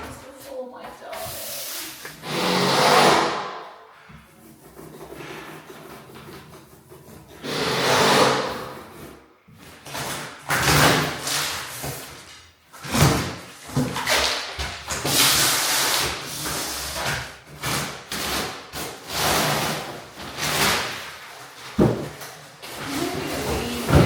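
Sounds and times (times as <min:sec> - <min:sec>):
knocks scrapes and rustles: 0:00.0 - 0:24.0.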